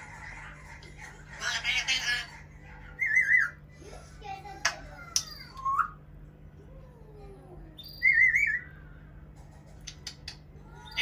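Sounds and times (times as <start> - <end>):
parrot whistling: 3.0 - 3.6, 7.8 - 8.8.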